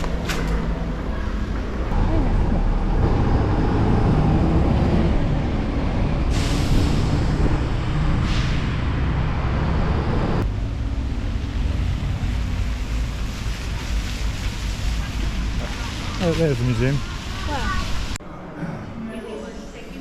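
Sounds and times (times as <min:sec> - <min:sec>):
vehicle rumble: 0:00.0 - 0:18.2
short air hisses: 0:06.3 - 0:07.0.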